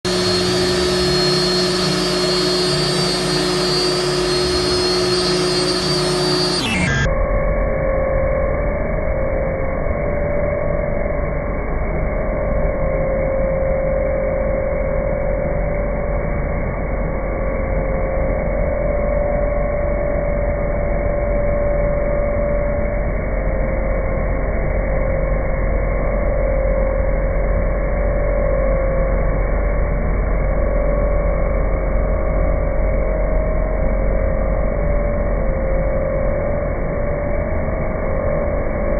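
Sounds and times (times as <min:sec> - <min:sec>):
router machine whining: 0:00.0 - 0:07.5.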